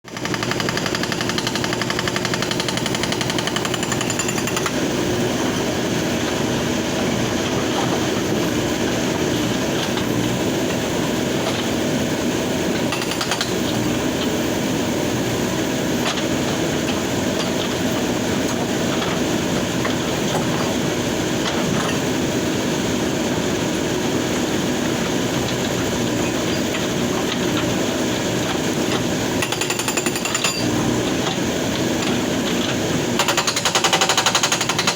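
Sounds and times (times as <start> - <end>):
hydraulic breaker hammering stone: 0.1 - 5.4, 12.6 - 14.6, 24.8 - 34.9
loader engine running: 0.2 - 34.9.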